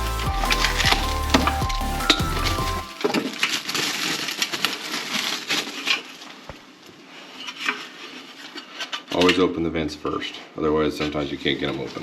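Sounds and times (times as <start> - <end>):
background music: 0.0 - 3.2
hands rustling and scraping: 0.0 - 9.4.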